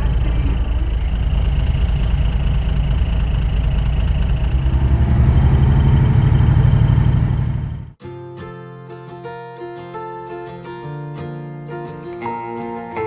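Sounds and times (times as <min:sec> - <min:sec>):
road noise: 0:00.0 - 0:08.0
truck diesel engine running: 0:00.0 - 0:08.0.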